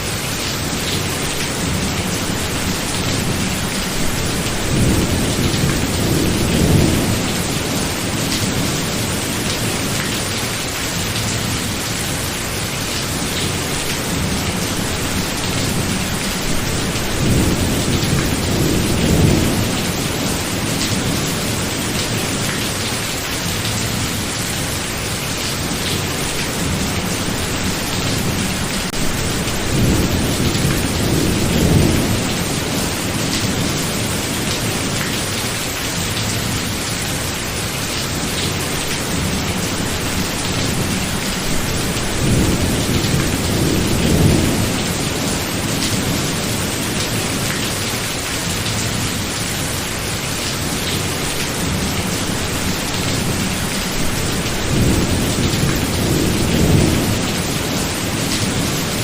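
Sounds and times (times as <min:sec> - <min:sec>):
heavy rain: 0:00.0 - 0:59.0.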